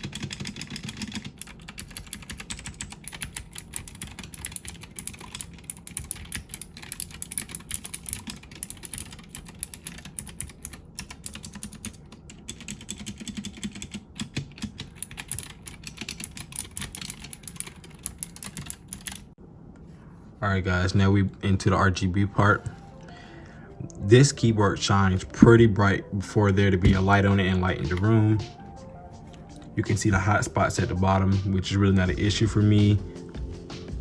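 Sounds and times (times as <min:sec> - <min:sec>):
clicky mechanical keyboard typing: 0:00.0 - 0:19.3.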